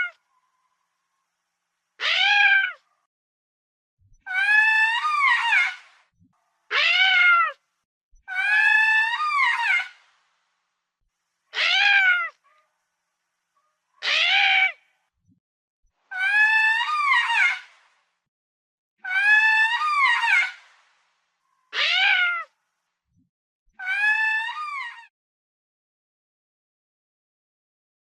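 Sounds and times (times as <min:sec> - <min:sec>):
lemur wailing calls: 0:02.0 - 0:02.8, 0:04.3 - 0:05.8, 0:06.7 - 0:07.6, 0:08.3 - 0:10.0, 0:11.6 - 0:12.4, 0:14.0 - 0:14.8, 0:16.1 - 0:17.7, 0:19.0 - 0:20.6, 0:21.7 - 0:22.5, 0:23.8 - 0:25.1.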